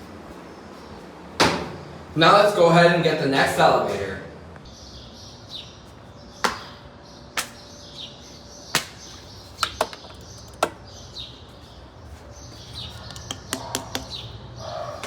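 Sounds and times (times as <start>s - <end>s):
small birds chirping: 4.6s - 15.0s.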